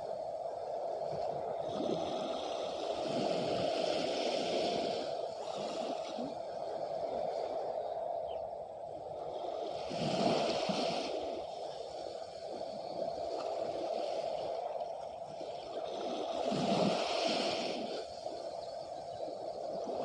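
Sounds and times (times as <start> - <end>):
waves washing at shore: 0.0 - 20.0.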